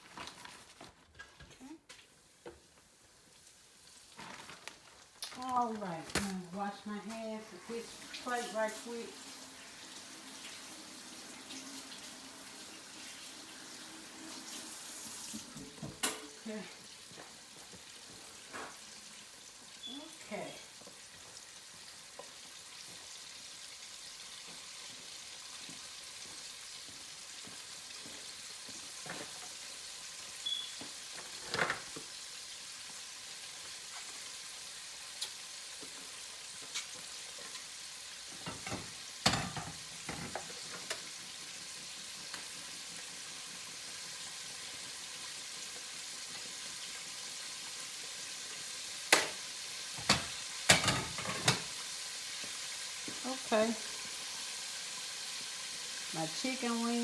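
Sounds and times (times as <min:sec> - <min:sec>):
chicken wings sizzling in oil: 0:01.6 - 0:57.0
utensils knocking on pan: 0:50.0 - 0:51.7.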